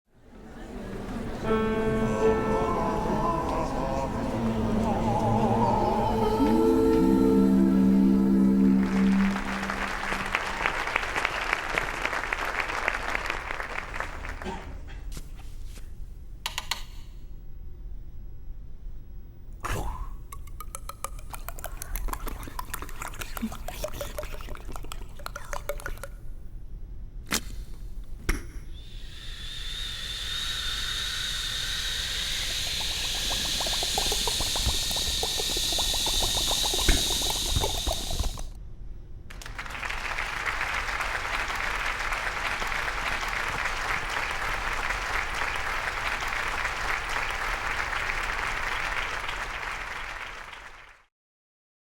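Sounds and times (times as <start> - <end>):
running water whistling: 1.5 - 11.5, 29.0 - 38.5
sharp clicks: 16.5 - 17.0.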